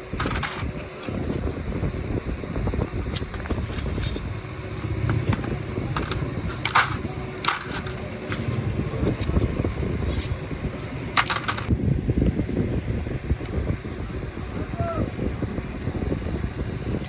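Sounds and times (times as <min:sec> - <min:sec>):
steady low rumble: 0:00.0 - 0:17.0
metal tools clinking: 0:03.1 - 0:11.7.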